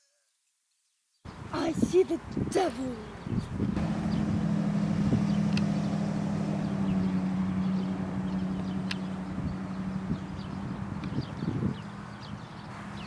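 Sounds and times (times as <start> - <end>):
engine low drone: 3.8 - 13.0.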